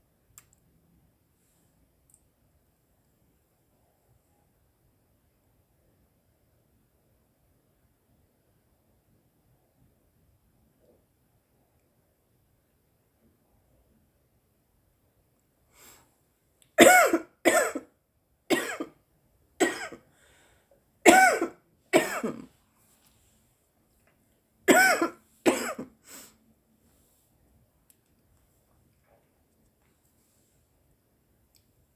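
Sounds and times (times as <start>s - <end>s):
woman coughing: 16.8s - 17.9s, 18.5s - 18.9s, 19.6s - 20.0s, 21.1s - 22.5s, 24.7s - 25.9s.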